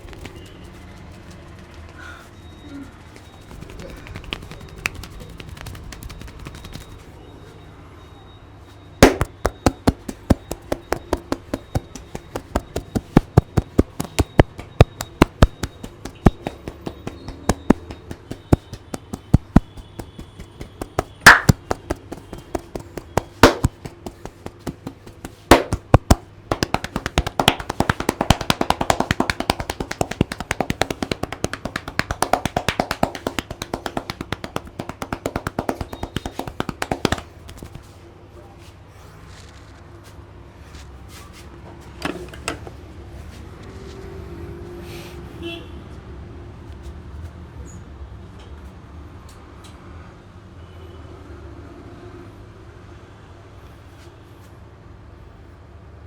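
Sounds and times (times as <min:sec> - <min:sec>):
hands tapping and slapping head: 0:03.5 - 0:07.0, 0:09.0 - 0:37.8.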